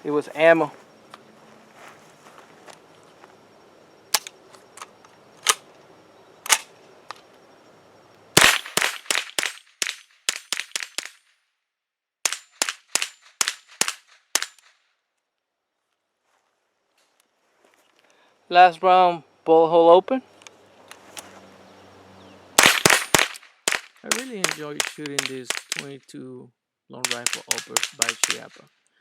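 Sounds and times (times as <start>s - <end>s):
rifle shots: 8.4s - 11.2s, 12.2s - 14.7s, 22.6s - 25.9s, 27.0s - 28.6s.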